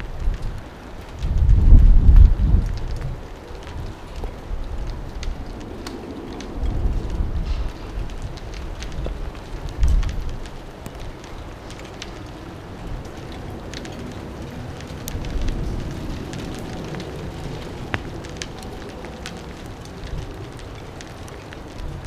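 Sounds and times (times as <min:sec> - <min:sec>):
raindrops ticking: 0:00.0 - 0:22.0
wind buffeting: 0:00.0 - 0:22.0.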